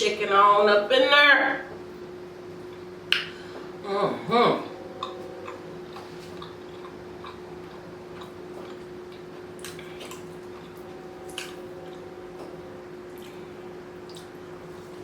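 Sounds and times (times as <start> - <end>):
faint steady hum: 0.0 - 15.0
chewing mouth clicks and smacks: 6.4 - 10.8.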